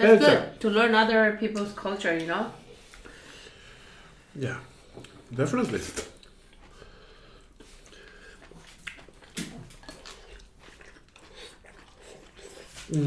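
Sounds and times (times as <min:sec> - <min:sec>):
chewing and mouth smacks: 0:04.9 - 0:13.0.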